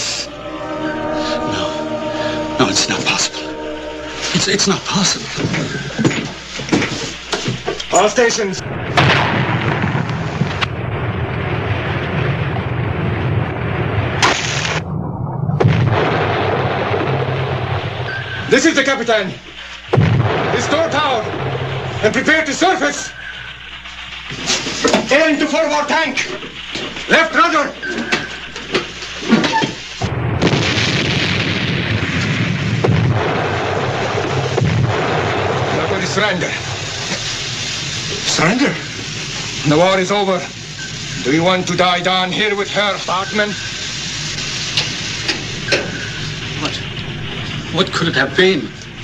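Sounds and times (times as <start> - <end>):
deep rushing sea rumble: 0.0 - 6.5, 8.1 - 24.4, 30.0 - 42.7
sharp crack: 8.6 - 27.2, 30.0 - 39.8
loud rush of compressed air: 28.4 - 32.9, 36.6 - 39.8, 43.5 - 46.8.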